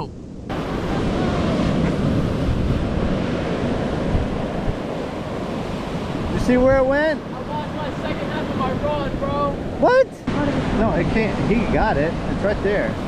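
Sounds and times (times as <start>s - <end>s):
wind buffeting microphone: 0.0s - 13.0s
breaking surf: 0.5s - 13.0s.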